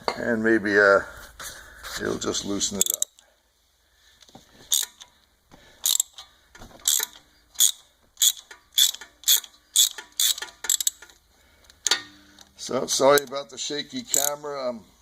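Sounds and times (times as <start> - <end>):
ratchet wrench clicking: 2.8 - 3.2, 4.7 - 5.1, 5.8 - 12.5, 14.1 - 14.4.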